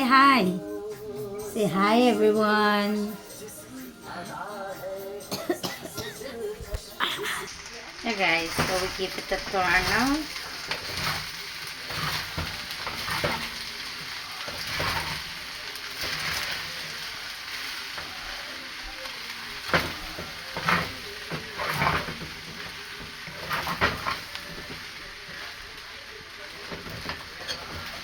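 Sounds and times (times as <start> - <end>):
rice sizzling in a hot pan: 0.0 - 28.0
spatula scraping a pan: 8.2 - 28.0.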